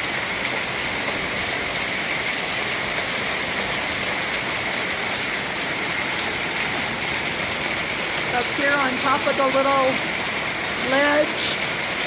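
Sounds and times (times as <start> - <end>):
rain and hail on roof: 0.0 - 12.0.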